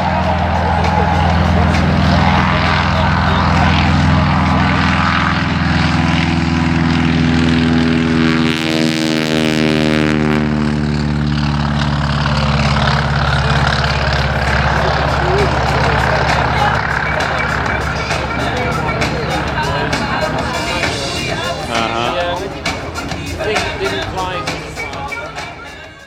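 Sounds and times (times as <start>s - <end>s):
propeller airplane passing by: 0.0s - 26.0s.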